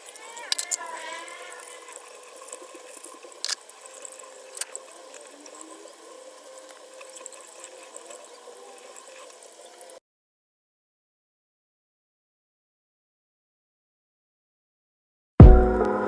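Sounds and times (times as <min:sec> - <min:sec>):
water running: 0:00.0 - 0:10.0.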